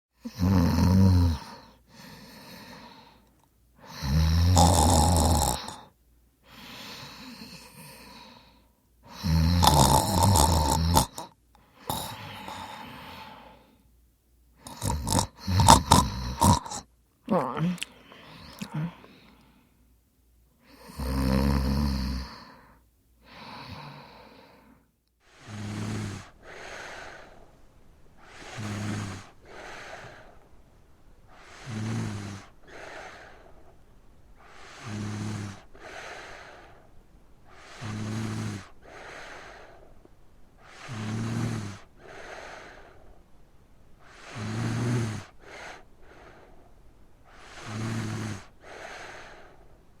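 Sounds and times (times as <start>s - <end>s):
woman snoring: 0.2s - 3.2s, 3.8s - 5.9s, 6.5s - 8.5s, 9.1s - 13.7s, 14.6s - 19.5s, 20.7s - 24.7s, 25.3s - 27.4s, 28.2s - 30.4s, 31.3s - 33.4s, 34.4s - 36.7s, 37.5s - 39.7s, 40.6s - 42.9s, 44.0s - 46.4s, 47.3s - 49.5s.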